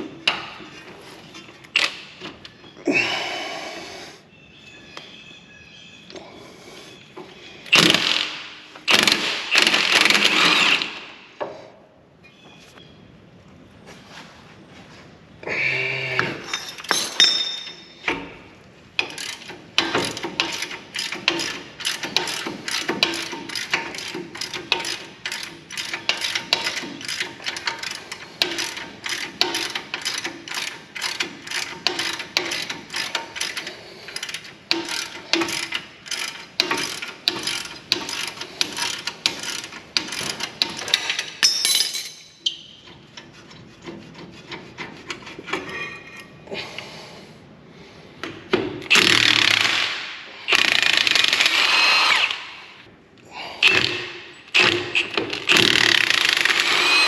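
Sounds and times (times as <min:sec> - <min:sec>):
metal parts clattering: 0:16.4 - 0:18.0, 0:19.0 - 0:42.8
ratchet wrench clicking: 0:19.0 - 0:41.2, 0:50.5 - 0:51.6, 0:54.5 - 0:57.0.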